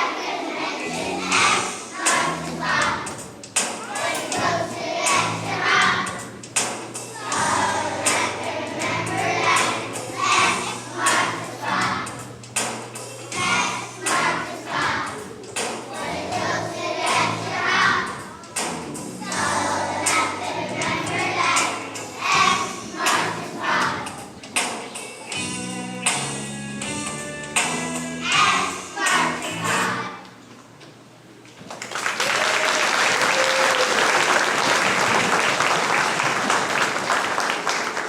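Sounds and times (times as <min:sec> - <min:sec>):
children's choir singing: 0:00.0 - 0:25.4, 0:28.2 - 0:30.3.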